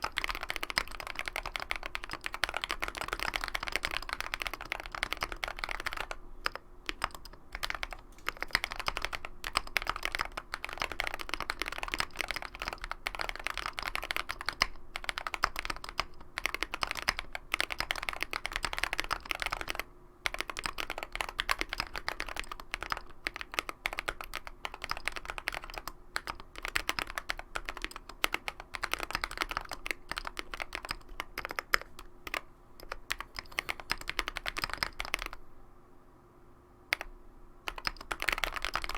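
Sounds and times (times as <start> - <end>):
mechanical keyboard typing: 0.0 - 35.4, 36.9 - 37.1, 37.7 - 38.9.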